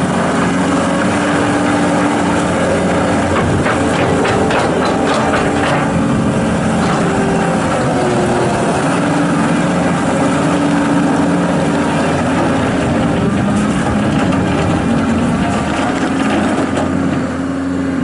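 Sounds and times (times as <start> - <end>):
diesel engine running: 0.0 - 18.0
metal knock or clank: 3.3 - 8.2.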